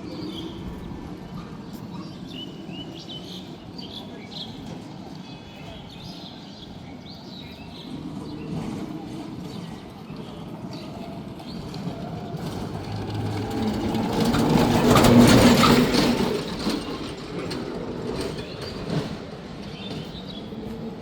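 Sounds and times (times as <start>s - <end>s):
vehicle passing by: 10.8s - 17.2s.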